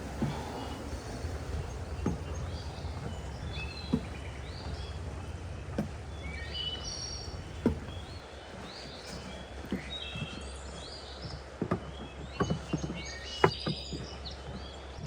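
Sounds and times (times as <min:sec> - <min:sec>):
low rumble: 0:00.0 - 0:08.2
footsteps on a trail: 0:00.0 - 0:11.5
small birds chirping: 0:00.0 - 0:15.0.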